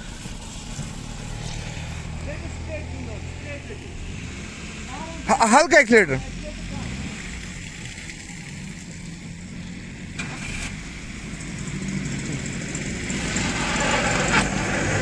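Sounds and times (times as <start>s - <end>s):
car engine under light throttle: 0.0s - 15.0s
hiss: 10.2s - 15.0s.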